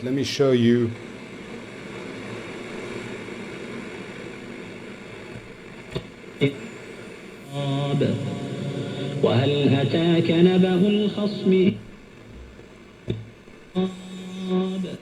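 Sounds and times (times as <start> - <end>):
broadcast voice on radio: 0.0 - 2.6, 6.4 - 11.9
radio static hiss: 0.0 - 15.0
sharp radio crackles: 0.0 - 15.0.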